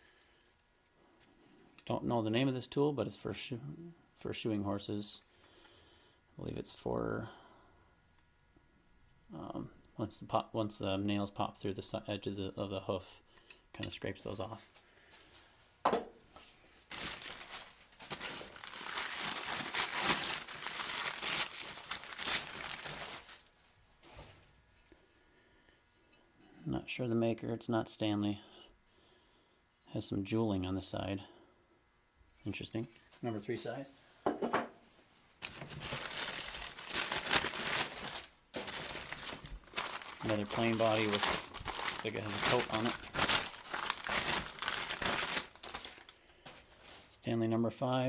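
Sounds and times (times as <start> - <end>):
paper crumpling and tearing: 16.9 - 23.5, 35.4 - 47.1.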